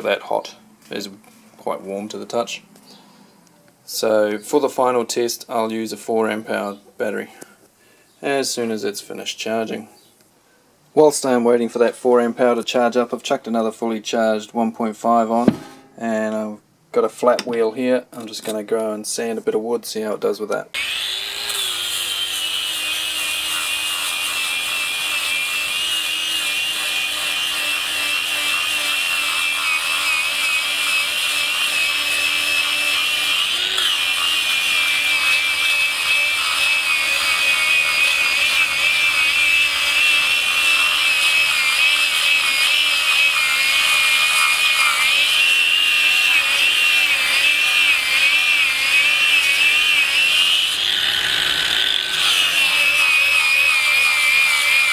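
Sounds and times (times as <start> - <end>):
angle grinder motor whine: 20.8 - 54.9
abrasive rasping on wood: 23.2 - 54.9.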